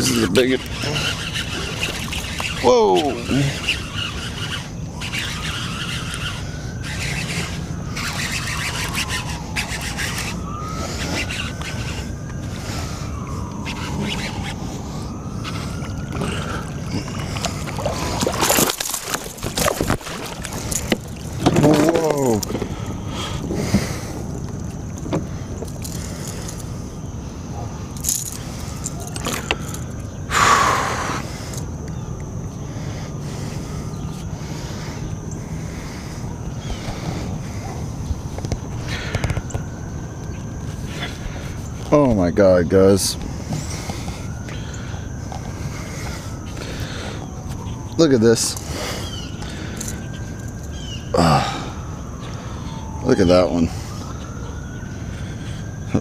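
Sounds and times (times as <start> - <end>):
fishing reel drag whining: 0.0 - 27.0, 27.9 - 54.1
wind and water noise: 0.0 - 56.0
fish splashing: 16.1 - 21.4.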